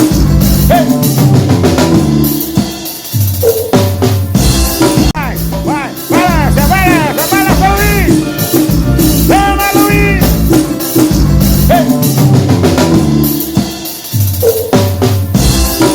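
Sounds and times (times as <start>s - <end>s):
steady bass line: 0.0s - 2.3s, 4.4s - 13.4s
drum kit kick and snare: 0.0s - 15.9s
bending melodic lead: 4.4s - 11.7s.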